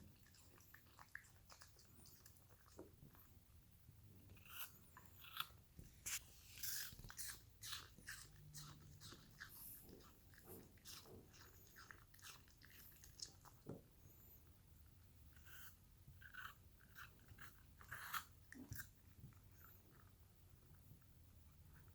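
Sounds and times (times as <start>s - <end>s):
dog crunching apple: 4.2s - 13.8s, 15.4s - 20.1s.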